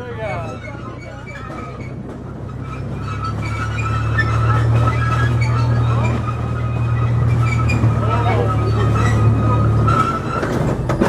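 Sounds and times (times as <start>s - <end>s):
train engine droning: 0.0s - 11.0s.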